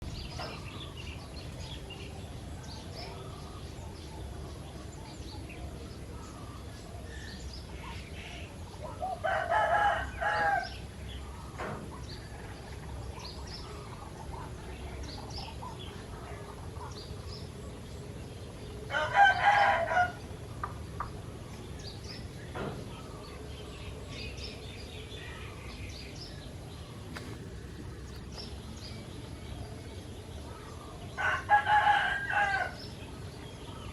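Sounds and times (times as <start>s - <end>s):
small birds chirping: 0.0s - 33.9s
rooster crowing: 9.1s - 10.8s, 18.9s - 20.3s, 31.2s - 32.9s.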